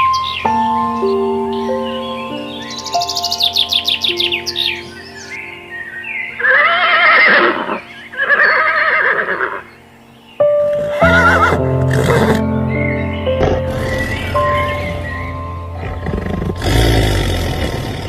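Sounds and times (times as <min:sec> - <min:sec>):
background music: 0:00.0 - 0:18.0
horse whinnying: 0:06.4 - 0:09.6, 0:10.7 - 0:12.4.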